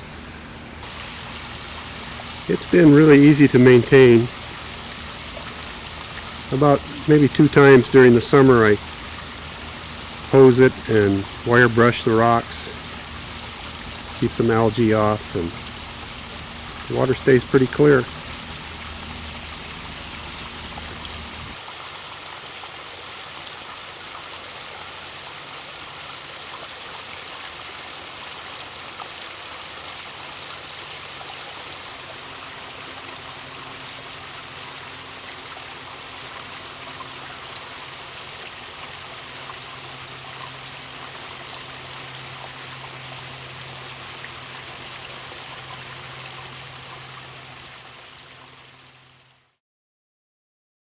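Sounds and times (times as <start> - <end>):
water spilling over rocks: 0.8 - 49.3.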